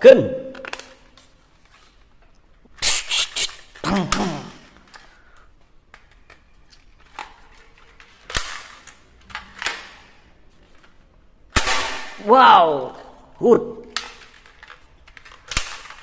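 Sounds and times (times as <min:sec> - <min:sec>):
toy shotgun plastic clicks: 0:14.0 - 0:16.0.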